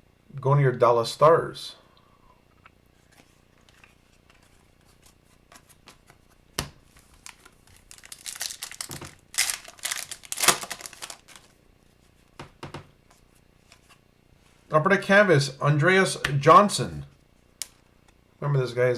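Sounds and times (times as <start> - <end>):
foil wrapper tearing and crinkling: 7.0 - 11.6.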